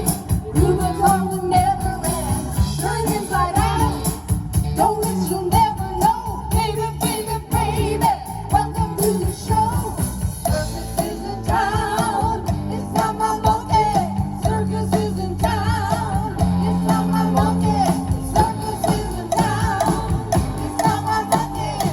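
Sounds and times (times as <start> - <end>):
live rock band playing: 0.0 - 21.9.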